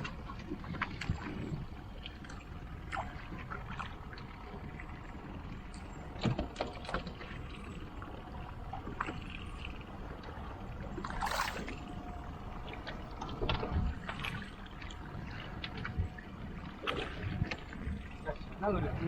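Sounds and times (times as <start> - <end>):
boat engine rumbling: 0.0 - 19.0
water rushing: 11.0 - 12.2.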